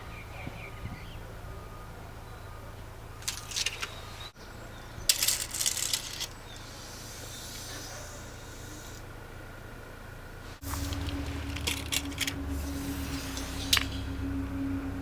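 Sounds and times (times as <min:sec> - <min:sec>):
tape measure metallic rattling: 0:03.2 - 0:03.9, 0:05.1 - 0:06.7, 0:10.6 - 0:14.2.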